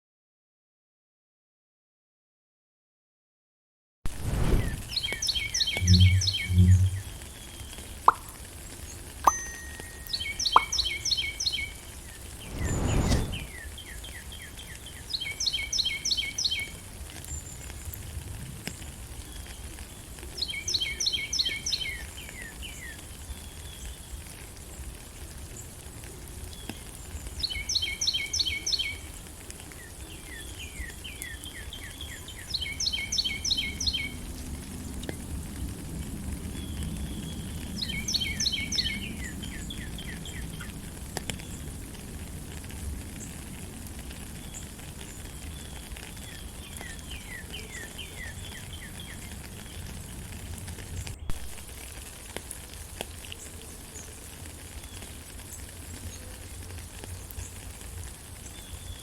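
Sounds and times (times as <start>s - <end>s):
rain hiss: 4.1s - 59.0s
faint low bird notes: 4.4s - 7.4s, 9.3s - 11.4s
bird singing rapid high notes: 4.6s - 7.2s, 9.3s - 11.8s.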